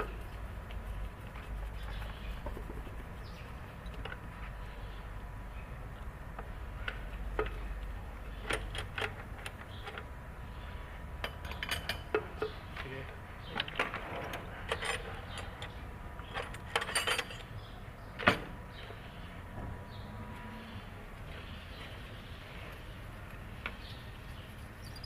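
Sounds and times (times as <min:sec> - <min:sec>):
low steady rumble: 0:00.0 - 0:12.6.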